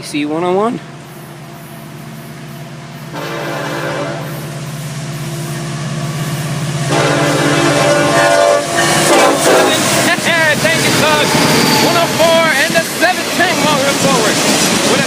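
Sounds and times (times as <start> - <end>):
diesel locomotive engine drone: 0.0 - 15.0
locomotive air horn: 3.1 - 4.5, 6.8 - 10.0.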